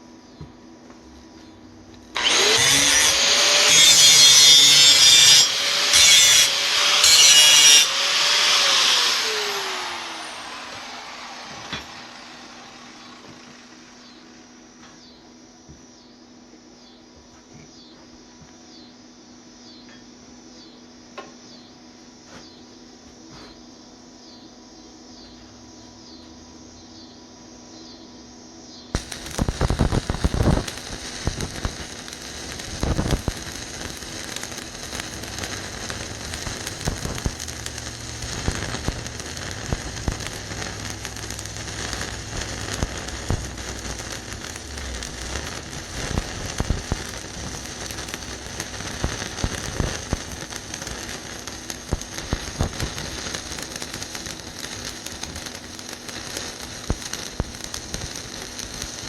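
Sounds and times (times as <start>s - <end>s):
welding arc crackling: 2.0s - 14.4s, 28.9s - 59.0s
sharp arc cracks: 2.2s - 14.0s, 29.0s - 59.0s.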